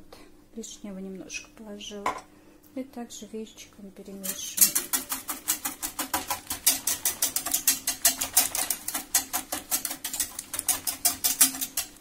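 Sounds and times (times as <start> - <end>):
whisk clicking against container: 4.2 - 12.0.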